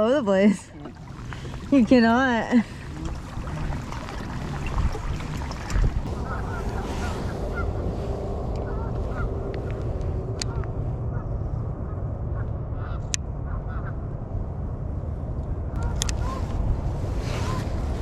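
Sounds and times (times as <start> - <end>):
water noise: 0.0 - 12.1, 15.7 - 18.0
wind: 0.0 - 18.0
waterfowl honking: 0.8 - 7.8, 8.6 - 9.4.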